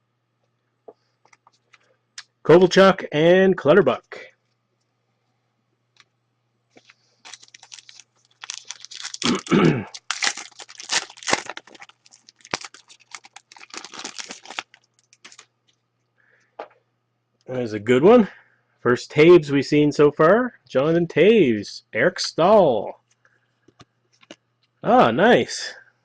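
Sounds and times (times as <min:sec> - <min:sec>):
card pack wrapper crinkling: 0:06.8 - 0:15.5.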